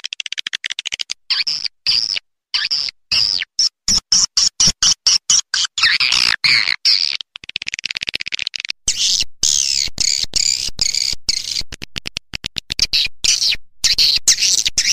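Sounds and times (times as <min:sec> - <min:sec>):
swiftlets twittering and chirping: 0:08.9 - 0:11.7.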